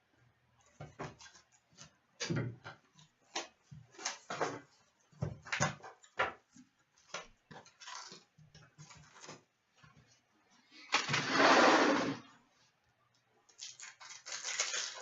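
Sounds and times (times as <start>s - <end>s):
card pack wrappers crinkling: 13.5s - 15.0s.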